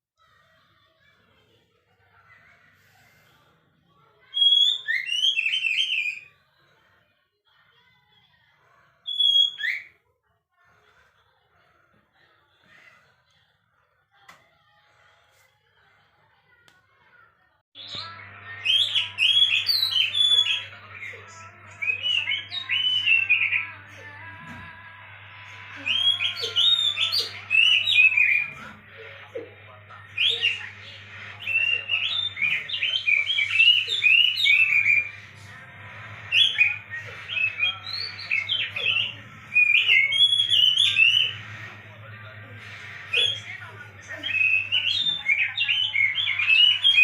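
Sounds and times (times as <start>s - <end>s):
steady low hum: 28.5s - 47.0s.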